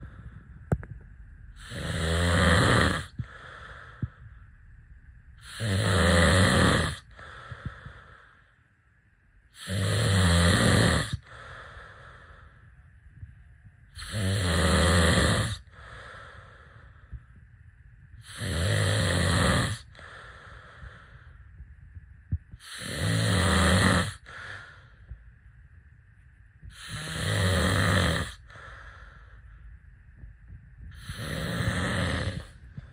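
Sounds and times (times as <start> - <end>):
soft breath: 0.0 - 1.9, 3.0 - 5.8, 6.8 - 9.7, 11.0 - 14.2, 15.5 - 18.6, 19.6 - 23.0, 24.1 - 27.1, 28.2 - 32.9
person snoring heavily: 1.5 - 4.2, 5.4 - 8.4, 9.5 - 12.6, 13.9 - 17.1, 18.2 - 21.3, 22.6 - 24.9, 26.7 - 29.3, 30.9 - 32.9.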